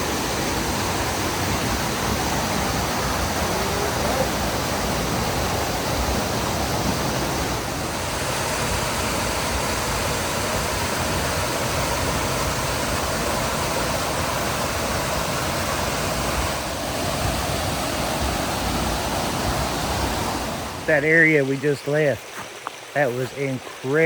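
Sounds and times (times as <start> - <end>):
water rushing over rocks: 0.0 - 24.0.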